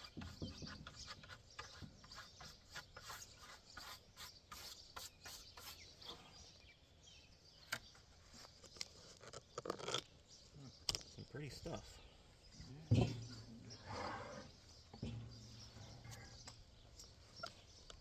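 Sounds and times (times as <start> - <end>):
rubbing and scraping on wood: 0.0 - 6.3, 12.9 - 17.7.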